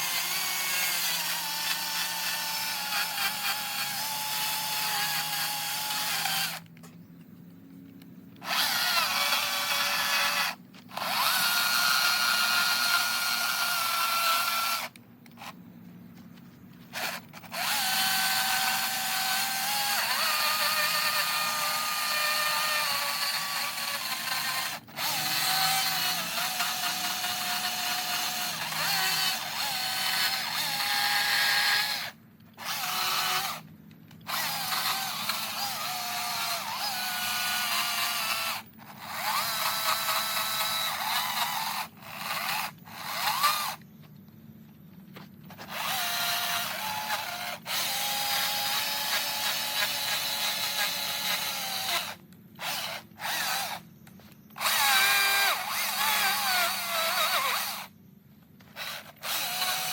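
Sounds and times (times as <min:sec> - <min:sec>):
power carving tool whining: 0:00.0 - 0:06.7, 0:08.4 - 0:15.6, 0:16.9 - 0:43.8, 0:45.5 - 0:58.0, 0:58.6 - 0:59.9.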